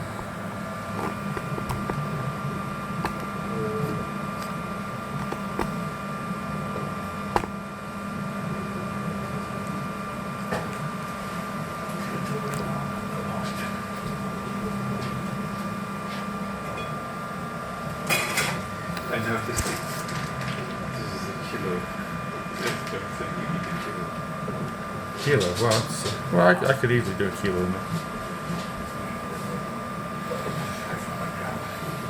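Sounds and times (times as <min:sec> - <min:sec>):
printer fans and motors whirring: 0:00.0 - 0:32.0.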